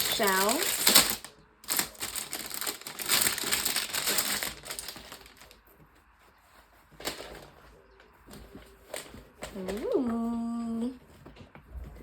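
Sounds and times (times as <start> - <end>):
packaging crinkling: 0.0 - 5.7, 6.7 - 10.0.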